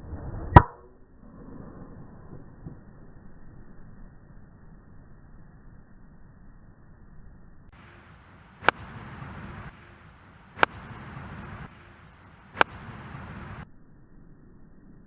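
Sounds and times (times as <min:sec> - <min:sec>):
golf club striking ball: 0:07.8 - 0:13.6.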